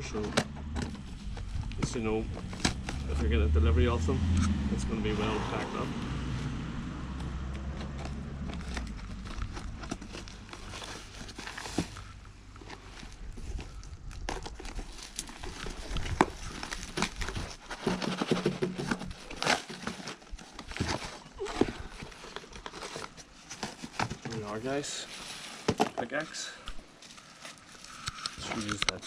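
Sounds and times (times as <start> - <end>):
packaging crinkling: 7.6 - 29.0.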